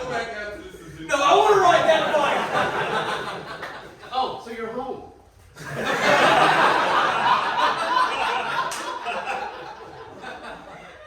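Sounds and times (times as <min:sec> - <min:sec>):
audience laughing: 0:01.7 - 0:04.0, 0:05.6 - 0:11.0.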